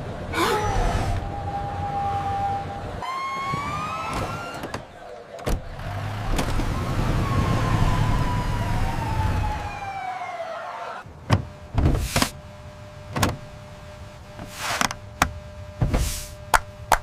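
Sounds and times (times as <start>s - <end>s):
fire truck siren wailing: 0.3s - 11.1s.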